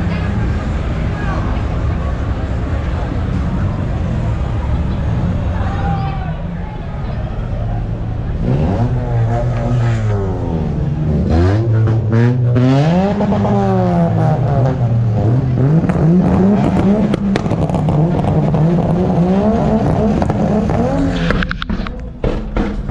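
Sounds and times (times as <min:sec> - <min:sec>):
car engine revving: 0:00.0 - 0:22.3.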